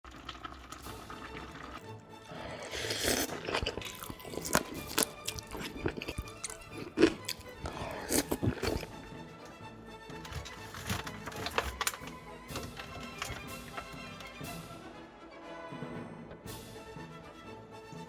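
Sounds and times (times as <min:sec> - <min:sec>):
crunching and chewing food: 0:00.0 - 0:14.4
background music: 0:00.1 - 0:18.0.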